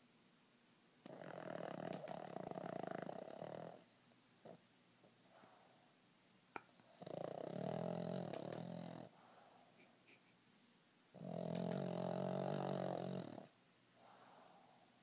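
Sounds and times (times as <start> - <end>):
dog snoring: 1.0 - 4.6, 6.6 - 9.2, 11.1 - 14.7.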